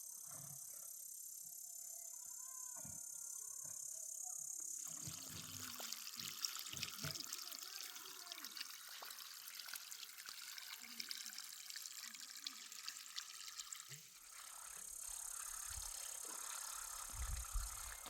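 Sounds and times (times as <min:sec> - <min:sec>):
water running and trickling: 0:04.8 - 0:18.0.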